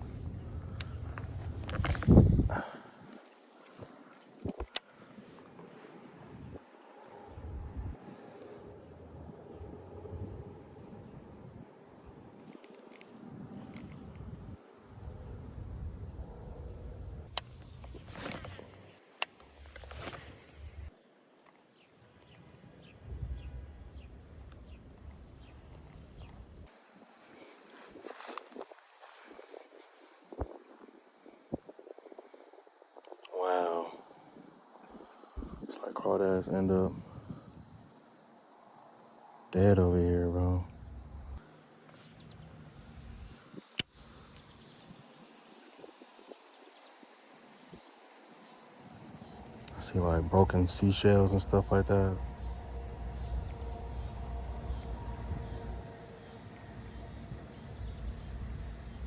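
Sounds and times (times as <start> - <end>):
wind rumble on microphone: 0.0 - 4.8, 5.8 - 19.0, 22.4 - 26.7, 34.9 - 35.9, 36.7 - 37.9, 49.0 - 59.0
high insect buzz: 0.0 - 59.0.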